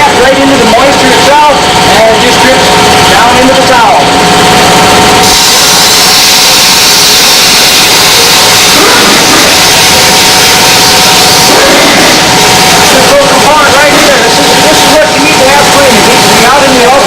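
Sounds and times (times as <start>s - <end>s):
machine hum: 0.0s - 17.0s
steam jet hissing: 5.2s - 15.4s.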